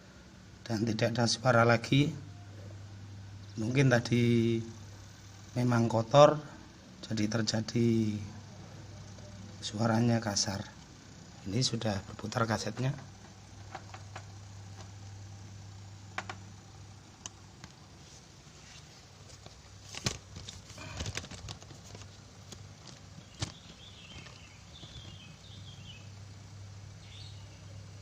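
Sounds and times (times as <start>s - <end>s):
low steady electronic hum: 0.0s - 28.0s
faint bird chirps: 23.2s - 26.2s, 27.0s - 28.0s.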